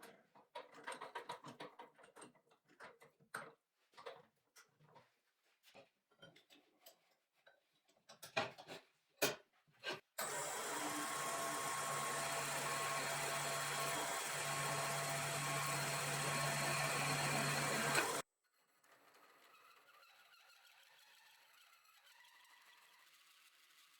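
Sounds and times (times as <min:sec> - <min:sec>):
drill press motor humming: 0:10.2 - 0:18.2.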